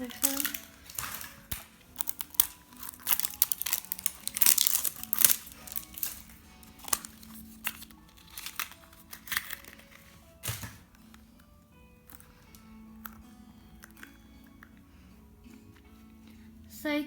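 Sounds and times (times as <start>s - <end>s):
plastic packaging crinkling: 0.0s - 11.2s
soft background music: 0.0s - 17.0s.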